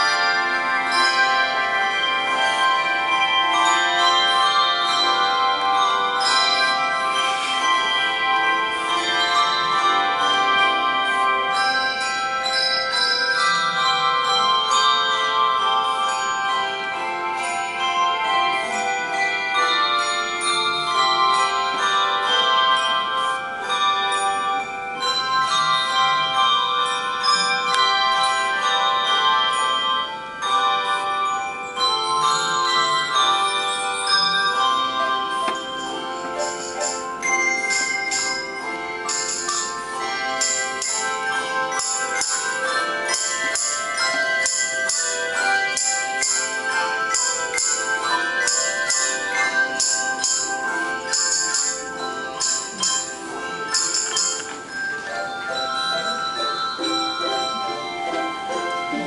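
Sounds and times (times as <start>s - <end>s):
handbell choir playing chords: 0.0s - 59.0s
rhythmic jingling: 0.0s - 59.0s.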